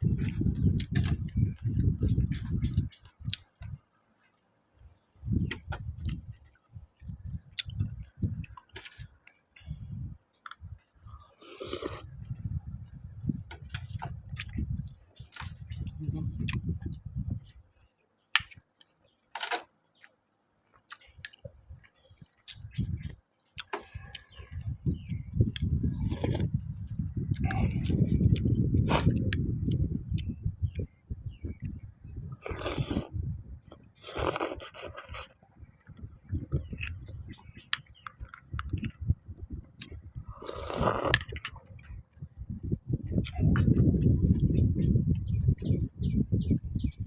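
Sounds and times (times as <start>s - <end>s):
low chewing: 0.0s - 9.5s, 10.4s - 12.7s, 13.5s - 18.0s, 18.8s - 30.9s, 31.6s - 42.3s
slurp: 11.4s - 12.1s, 26.0s - 26.6s, 28.8s - 29.2s, 32.4s - 33.2s, 34.0s - 35.4s, 40.3s - 41.5s.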